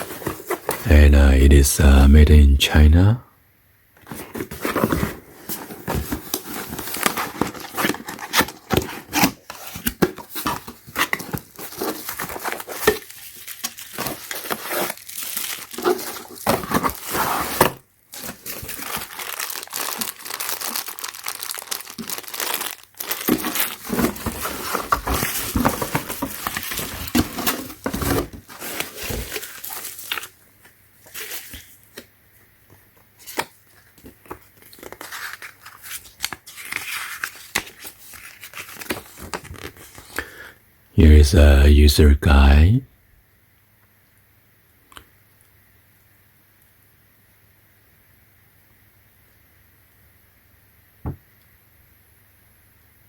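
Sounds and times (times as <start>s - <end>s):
packaging crinkling and tearing: 4.1s - 32.1s, 33.2s - 40.2s.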